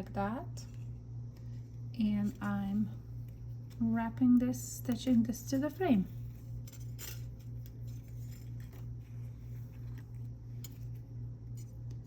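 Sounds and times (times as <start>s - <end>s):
steady low hum: 0.0s - 12.0s
wire clicking and scraping: 4.8s - 12.0s.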